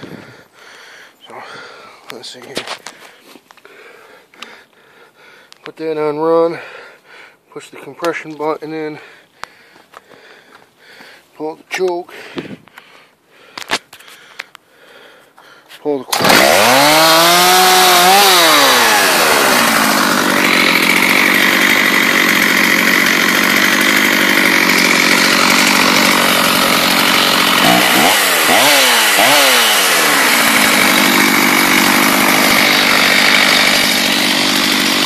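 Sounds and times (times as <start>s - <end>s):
chainsaw idling: 16.0s - 35.0s
chainsaw throttle blips: 16.0s - 35.0s.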